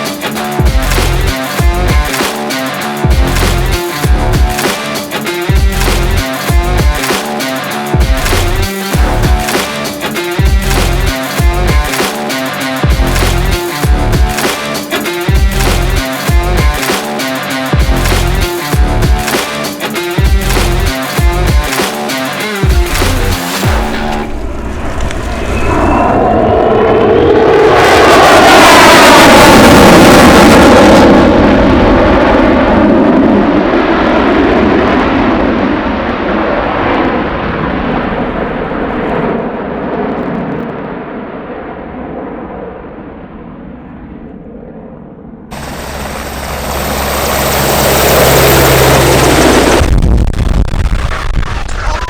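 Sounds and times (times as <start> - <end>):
aircraft engine high steady whine: 23.6 - 49.9
aircraft engine passing overhead: 24.0 - 49.8.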